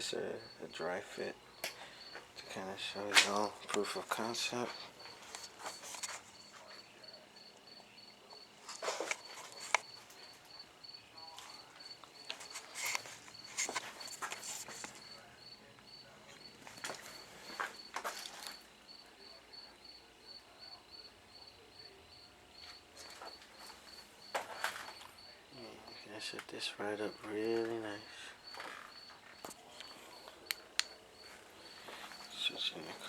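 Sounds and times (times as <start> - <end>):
insect chirping: 0.0 - 33.0
rustling and handling noise: 1.6 - 6.9, 8.5 - 10.6, 11.3 - 15.3, 16.3 - 18.7, 22.6 - 25.2, 27.4 - 33.0.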